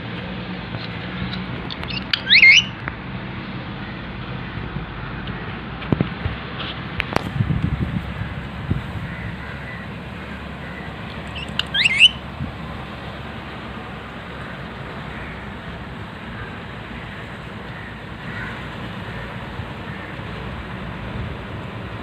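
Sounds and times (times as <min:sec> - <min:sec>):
parakeet squawking: 0:01.7 - 0:02.8, 0:10.6 - 0:12.2.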